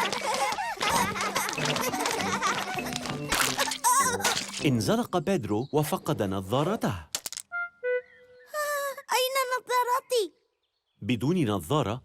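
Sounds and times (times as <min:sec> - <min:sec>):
cartoon background music: 0:00.7 - 0:08.8.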